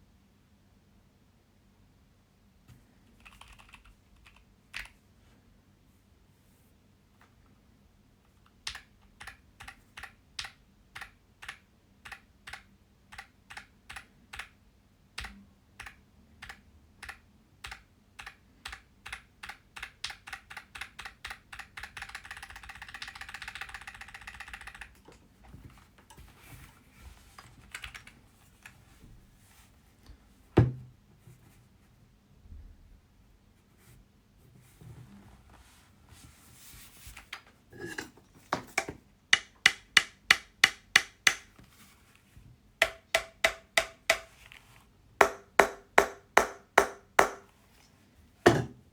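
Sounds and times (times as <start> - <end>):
keyboard typing clacks: 3.2 - 4.9, 15.2 - 25.0.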